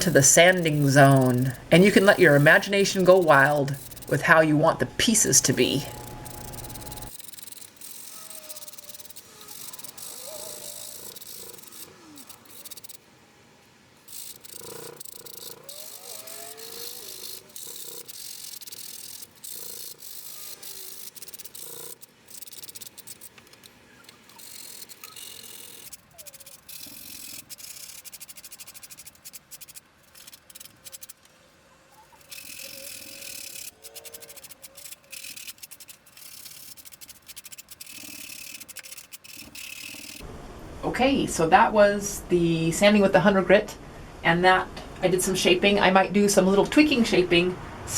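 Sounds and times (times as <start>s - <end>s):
sandpaper rubbing wood: 0.0s - 4.3s, 5.2s - 13.0s, 14.1s - 23.4s, 32.2s - 40.2s.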